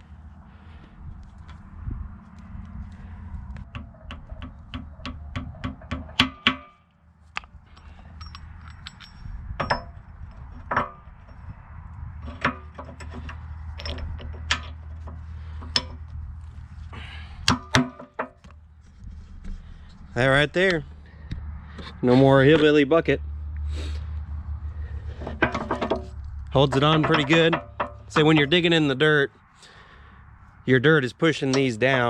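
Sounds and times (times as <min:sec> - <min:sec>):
hammer striking metal: 0:03.7 - 0:06.8, 0:26.6 - 0:28.8.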